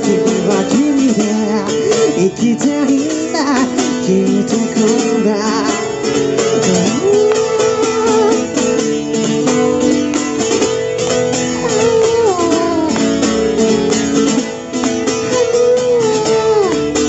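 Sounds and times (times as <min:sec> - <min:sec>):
strummed guitar: 0:00.0 - 0:17.0.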